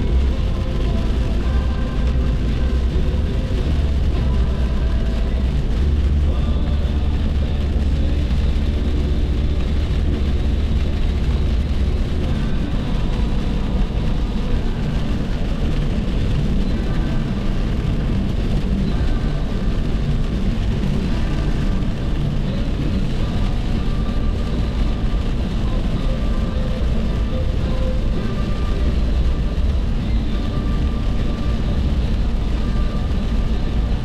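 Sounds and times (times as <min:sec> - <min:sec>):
vehicle cruising on highway: 0:00.0 - 0:34.0.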